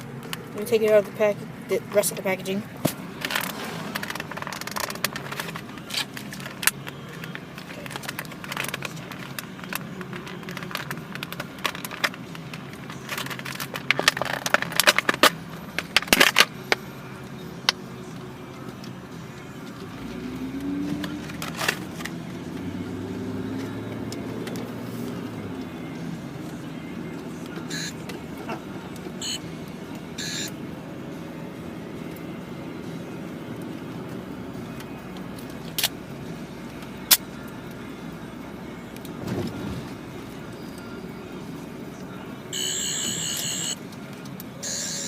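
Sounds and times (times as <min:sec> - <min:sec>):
car hum: 0:00.0 - 0:45.0
plastic packaging crackling: 0:03.3 - 0:06.6.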